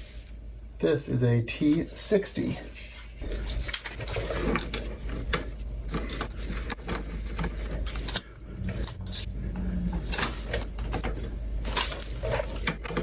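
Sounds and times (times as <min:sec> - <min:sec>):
low hum: 0:04.6 - 0:11.8.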